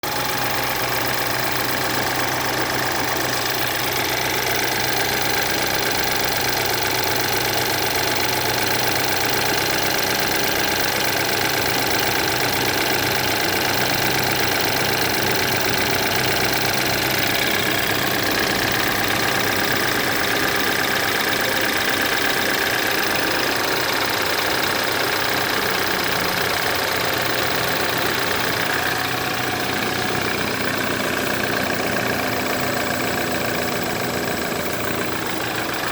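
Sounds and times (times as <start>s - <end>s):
car engine idling: 0.0s - 35.9s.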